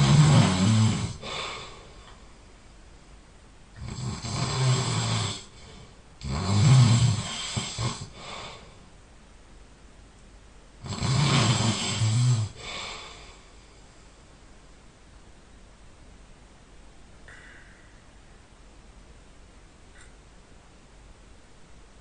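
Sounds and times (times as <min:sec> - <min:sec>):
person snoring loudly: 0:00.0 - 0:01.6, 0:03.8 - 0:05.6, 0:06.2 - 0:08.4, 0:10.8 - 0:13.2.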